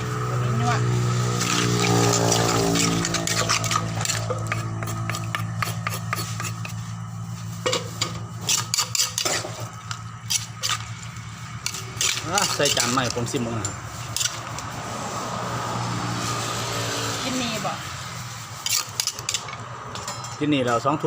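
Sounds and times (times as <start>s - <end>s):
utensils scraping against a mortar: 0.4s - 15.0s, 18.4s - 20.4s.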